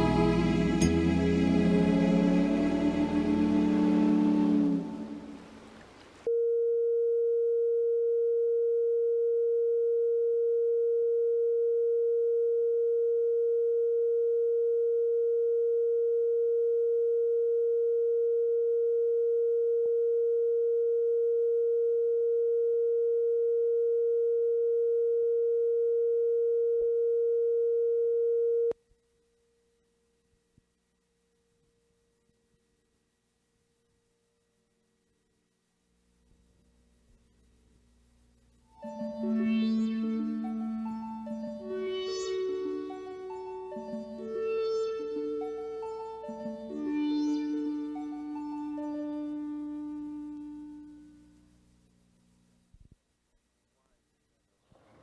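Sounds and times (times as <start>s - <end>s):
music: 0.0s - 5.4s, 38.7s - 51.4s
electronic test tone: 38.8s - 50.8s.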